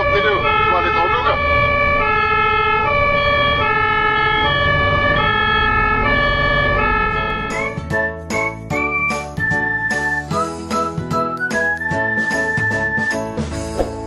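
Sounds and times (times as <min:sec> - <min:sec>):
low rumble of traffic: 0:00.0 - 0:08.6
ambulance hi-lo siren: 0:00.0 - 0:13.2.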